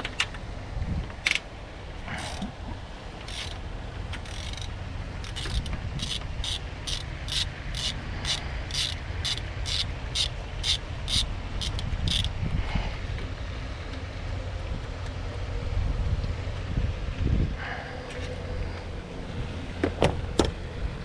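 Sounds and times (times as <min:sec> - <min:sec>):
ratchet wrench clicking: 0:02.2 - 0:02.5, 0:03.2 - 0:12.4.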